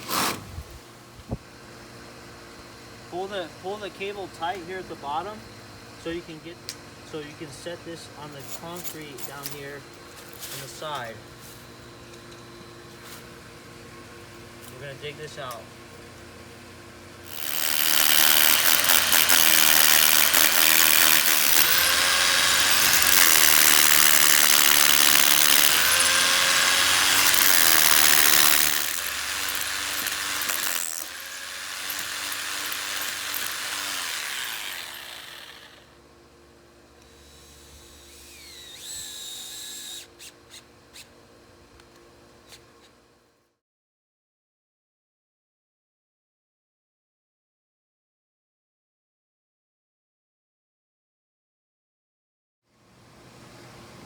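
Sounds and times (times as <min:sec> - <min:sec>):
power drill drilling into concrete: 0:17.3 - 0:35.9, 0:37.1 - 0:40.1.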